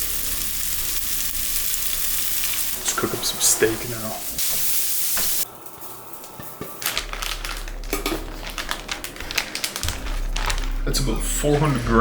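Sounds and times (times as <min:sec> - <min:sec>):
vegetables sizzling in frying pan: 0:00.0 - 0:09.0
low hum: 0:05.5 - 0:12.0.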